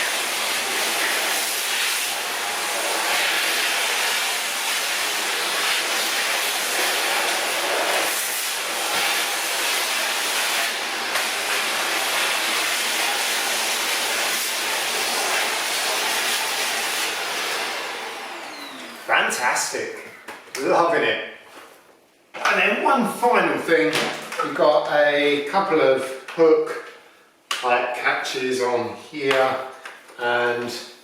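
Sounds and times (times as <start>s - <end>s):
vacuum cleaner running: 0.0s - 20.1s.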